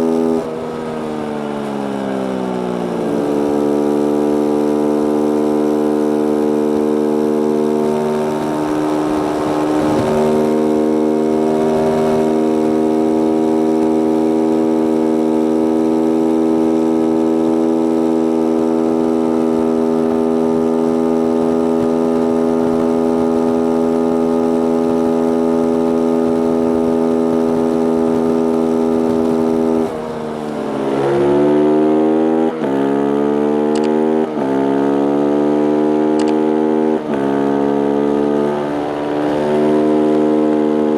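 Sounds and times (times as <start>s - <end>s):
motorcycle engine at high revs: 0.0s - 40.9s
wind rush: 6.4s - 15.0s, 16.7s - 32.6s.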